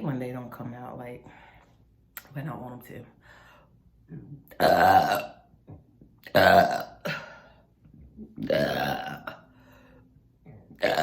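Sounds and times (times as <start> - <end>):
woman belching: 4.4 - 5.5, 6.2 - 7.4, 8.4 - 9.5, 10.7 - 11.0.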